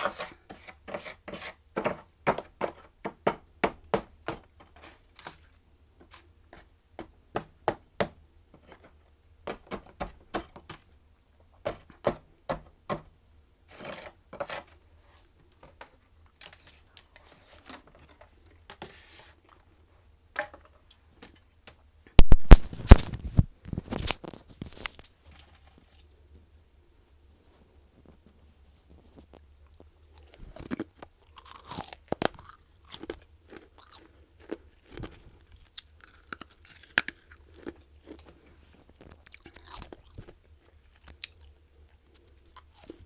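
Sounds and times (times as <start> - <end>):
loud crunching bite: 22.2 - 24.9
frost chunks clinking: 22.2 - 25.0.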